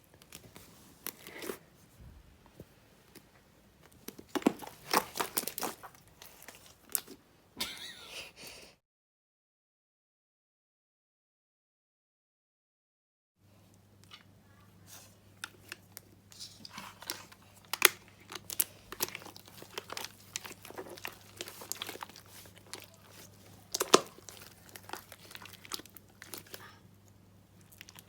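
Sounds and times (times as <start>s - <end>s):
slime clicking and crackling: 4.0s - 7.1s, 15.4s - 26.7s.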